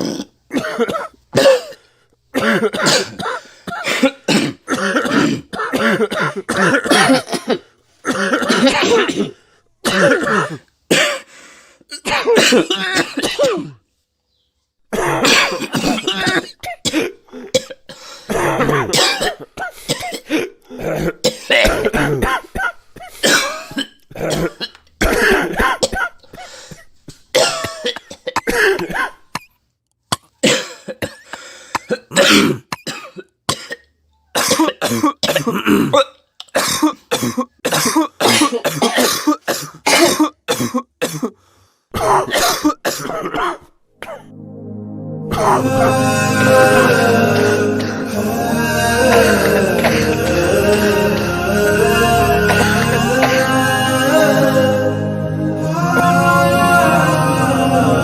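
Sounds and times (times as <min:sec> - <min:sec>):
person coughing hard: 0:00.0 - 0:01.8, 0:02.4 - 0:11.3, 0:11.9 - 0:13.8, 0:14.9 - 0:29.5, 0:30.4 - 0:33.8, 0:34.4 - 0:44.2, 0:49.1 - 0:50.8, 0:52.4 - 0:53.5
throat clearing: 0:42.0 - 0:44.2.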